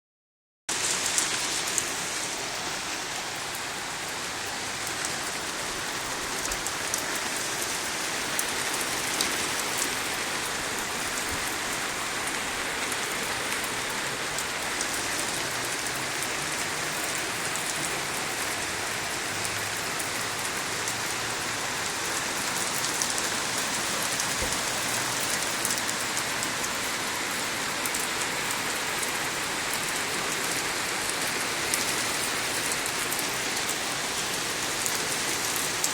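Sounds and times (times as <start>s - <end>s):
heavy rain pattering: 0.7s - 35.9s.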